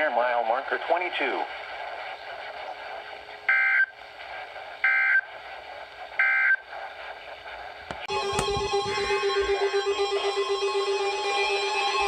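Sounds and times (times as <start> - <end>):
radio hiss: 0.0 - 12.0
music: 8.1 - 12.0.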